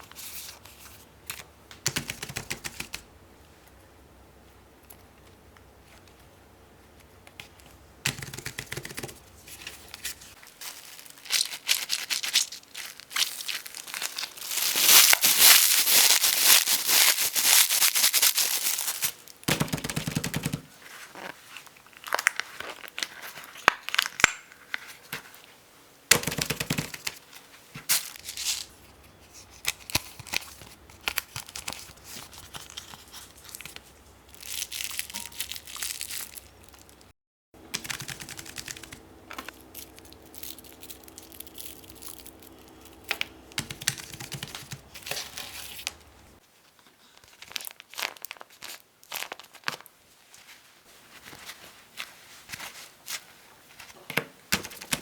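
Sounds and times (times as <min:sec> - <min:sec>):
packaging crinkling: 0:09.5 - 0:19.5, 0:20.9 - 0:24.6, 0:27.9 - 0:37.1, 0:37.8 - 0:46.2, 0:47.1 - 0:49.9.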